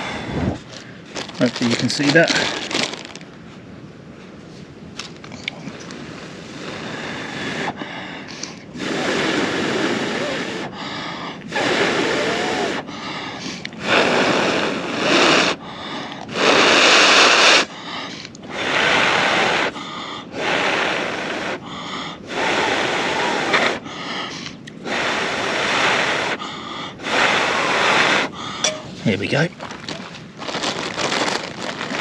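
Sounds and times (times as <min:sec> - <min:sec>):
person blowing on ember: 0:06.2 - 0:29.0.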